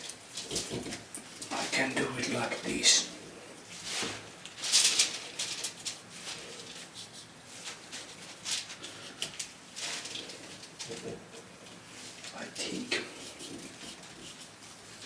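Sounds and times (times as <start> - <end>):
finger rubbing a mould: 13.0 - 14.6.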